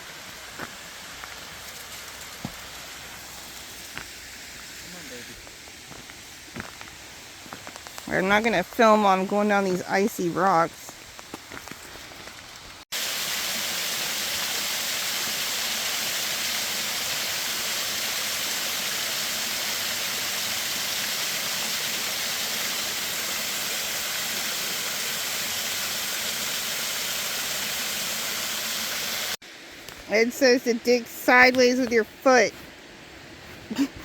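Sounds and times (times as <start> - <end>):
waterfall rushing: 13.0 - 29.4.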